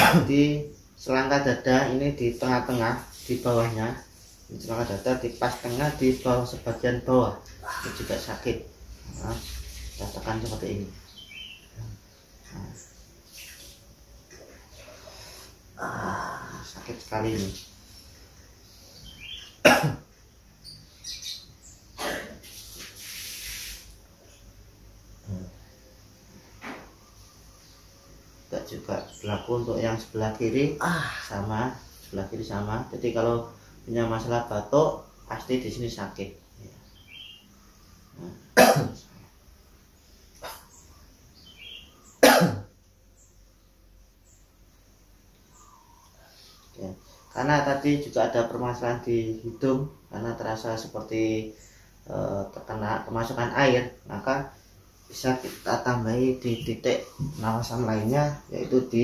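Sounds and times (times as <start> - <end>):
person coughing: 0.0 - 0.3, 19.6 - 20.1, 22.0 - 22.4, 38.6 - 39.0, 42.2 - 42.7
faint bird chirps: 5.6 - 32.8, 35.0 - 59.0
person's sharp vocal bursts: 7.6 - 8.4, 15.8 - 16.7, 30.7 - 31.4.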